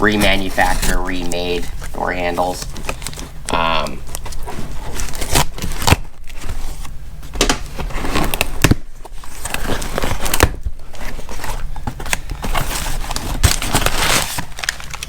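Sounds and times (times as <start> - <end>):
paper and cardboard crinkling: 0.0 - 15.0.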